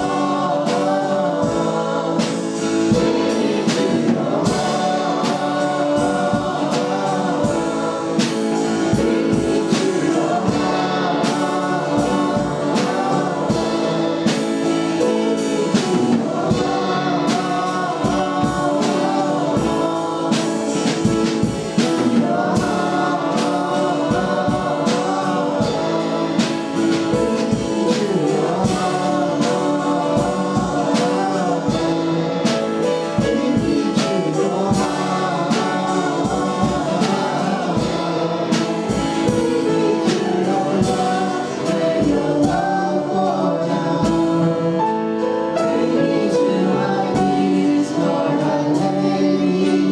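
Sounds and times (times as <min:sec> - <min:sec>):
drums beating: 0:00.0 - 0:49.9
group singing gospel song: 0:00.0 - 0:49.9
live band playing: 0:00.0 - 0:49.9.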